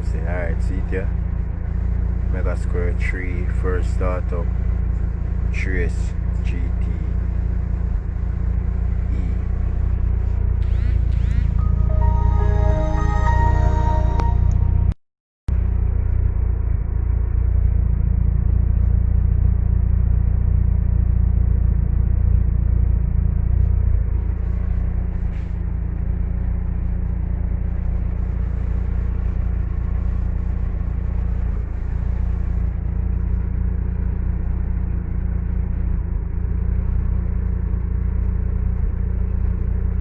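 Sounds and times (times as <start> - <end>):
car engine running: 0.0 - 11.6, 15.6 - 40.0.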